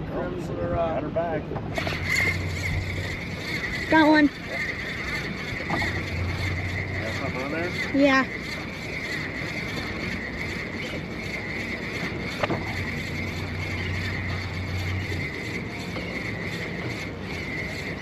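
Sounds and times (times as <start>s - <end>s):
boat background noise: 0.0s - 18.0s
constant high whine: 0.0s - 18.0s
low hum: 0.0s - 18.0s.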